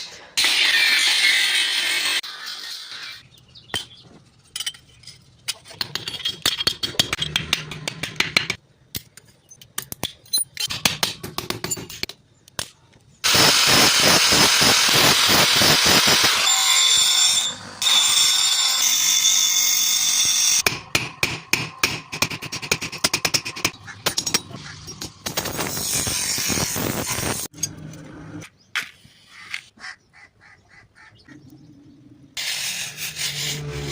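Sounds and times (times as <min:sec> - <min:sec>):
tapping and scraping on steel: 0:03.7 - 0:12.7, 0:20.7 - 0:25.6.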